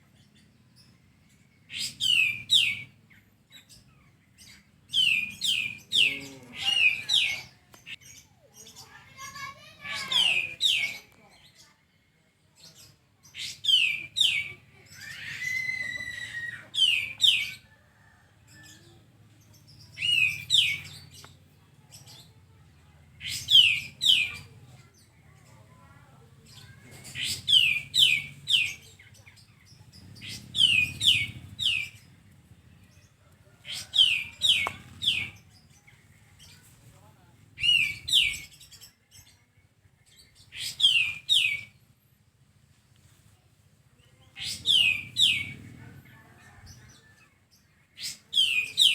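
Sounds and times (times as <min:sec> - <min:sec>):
songbird whistling: 0:40.5 - 0:41.7.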